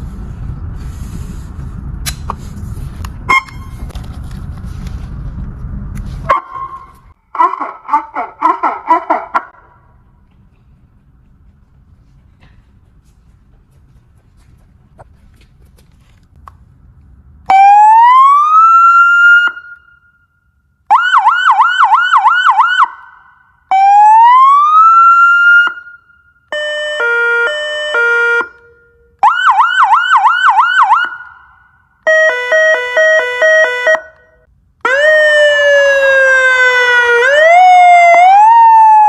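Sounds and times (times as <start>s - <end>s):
electronic police siren: 17.5s - 20.2s, 20.9s - 39.0s.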